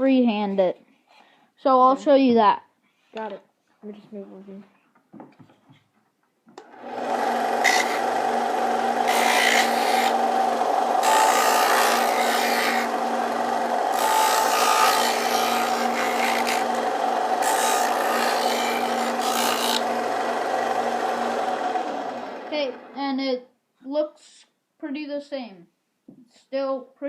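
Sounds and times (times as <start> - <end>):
disc sander motor hum: 6.6 - 23.0
rasp of wood being sanded: 6.8 - 22.8.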